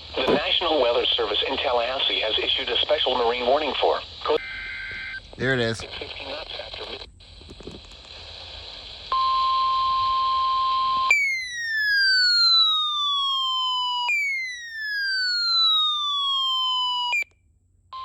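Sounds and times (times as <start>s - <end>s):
radio hiss: 0.0s - 9.2s
steady alarm tone: 9.2s - 17.2s
falling siren-like alarm: 9.4s - 17.3s.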